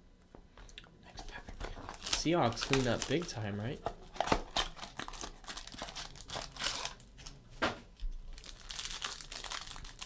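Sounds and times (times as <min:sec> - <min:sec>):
foil wrapper crinkling and tearing: 0:01.6 - 0:07.4, 0:08.3 - 0:10.0.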